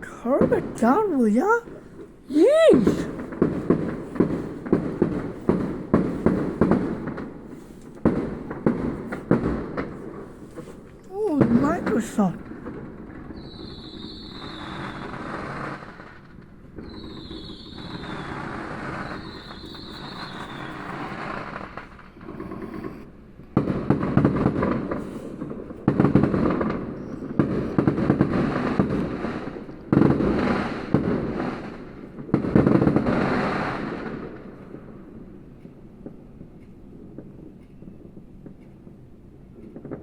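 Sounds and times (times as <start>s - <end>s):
fireworks crackling: 0.0s - 22.7s
fireworks bangs: 0.0s - 22.9s, 23.6s - 34.5s
fireworks whistling: 2.3s - 7.8s, 13.3s - 15.8s, 16.8s - 22.7s.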